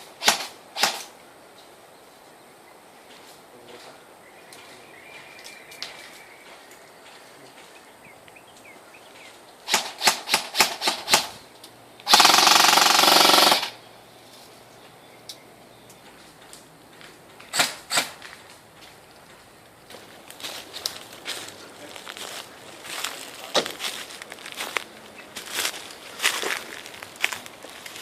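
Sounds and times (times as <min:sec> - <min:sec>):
airsoft gun shots: 0:00.2 - 0:01.1, 0:09.7 - 0:11.3, 0:12.1 - 0:13.8, 0:17.5 - 0:18.2.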